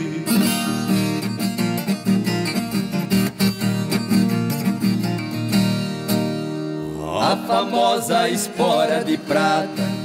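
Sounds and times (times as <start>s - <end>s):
plucked and strummed strings: 0.0s - 10.0s.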